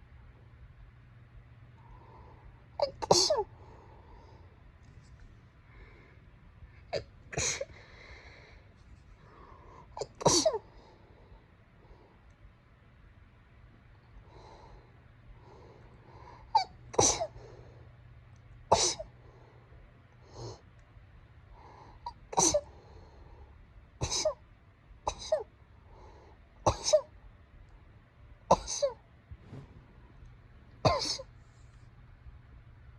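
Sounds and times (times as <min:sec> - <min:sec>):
person sneezing: 0:02.8 - 0:03.5, 0:07.0 - 0:07.7, 0:18.7 - 0:19.1, 0:22.4 - 0:22.7, 0:24.0 - 0:24.4, 0:30.9 - 0:31.3.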